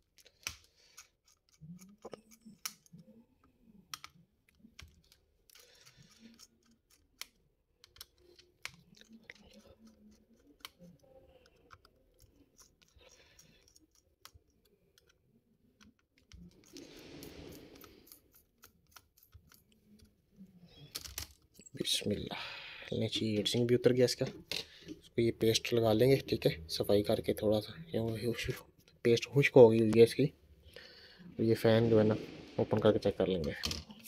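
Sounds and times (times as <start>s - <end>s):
screwdriver and parts clicking: 0.2s - 3.2s, 3.9s - 15.2s, 17.8s - 20.2s.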